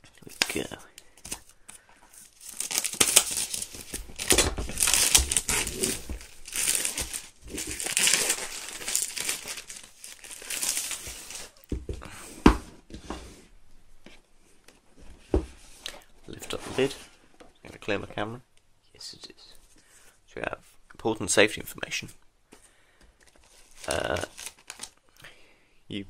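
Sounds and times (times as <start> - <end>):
packaging crinkling: 0.2 - 11.7, 23.2 - 25.0.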